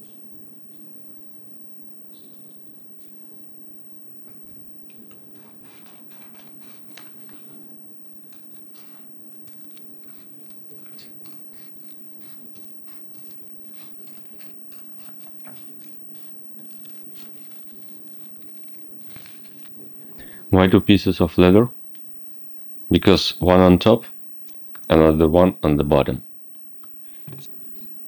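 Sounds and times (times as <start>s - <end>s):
faint steady hum: 8.0s - 28.0s.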